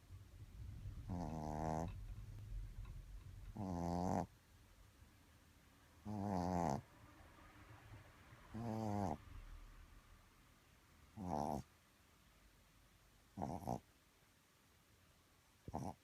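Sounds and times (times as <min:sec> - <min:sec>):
dog snoring: 0:00.9 - 0:02.2, 0:02.8 - 0:04.3, 0:06.0 - 0:06.9, 0:08.5 - 0:09.2, 0:11.1 - 0:11.7, 0:13.3 - 0:13.9, 0:15.6 - 0:16.0.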